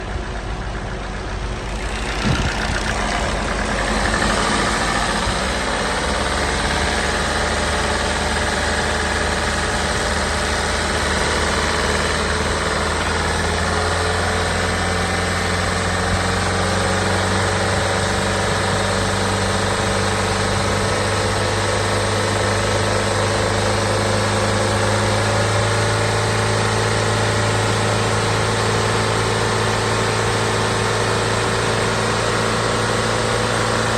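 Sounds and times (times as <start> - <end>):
car engine idling with lifter noise: 0.0 - 33.9
car engine starting: 0.0 - 33.9.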